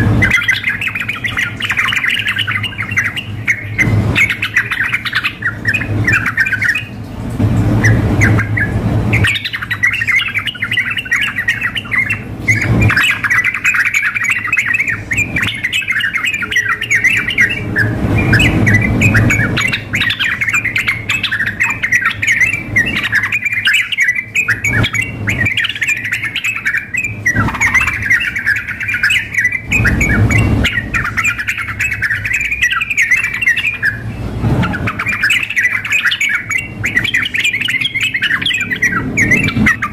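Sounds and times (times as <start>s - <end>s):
low hum: 0.0s - 13.5s
bulbuls singing and calling: 0.0s - 39.9s.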